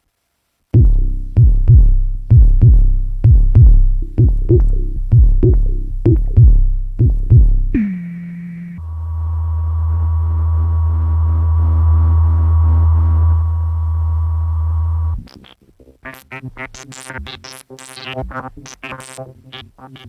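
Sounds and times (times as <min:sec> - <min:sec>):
deep synth drone: 0:00.8 - 0:15.2
plucky synth bass notes: 0:00.8 - 0:15.3.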